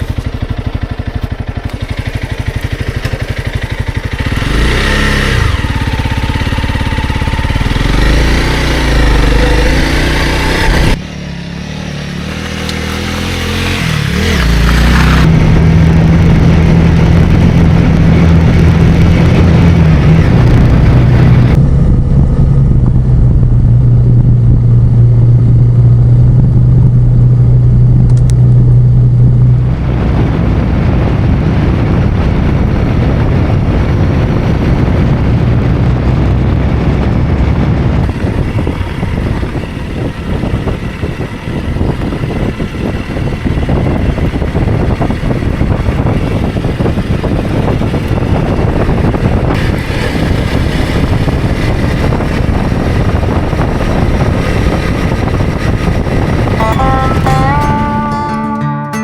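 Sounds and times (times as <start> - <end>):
wind noise on microphone: 0.0 - 11.0, 12.9 - 58.4
motorcycle engine running: 0.0 - 58.7
road noise: 0.0 - 59.0.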